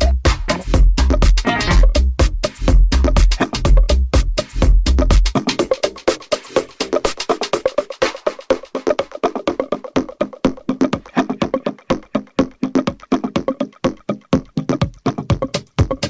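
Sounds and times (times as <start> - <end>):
deep kick drum: 0.0 - 5.7, 14.3 - 16.0
electronic dance music: 0.0 - 16.0.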